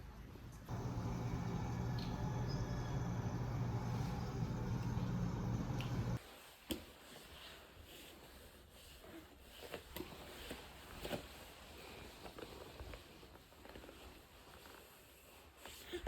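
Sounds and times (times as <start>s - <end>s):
soft rustling: 3.8s - 16.0s.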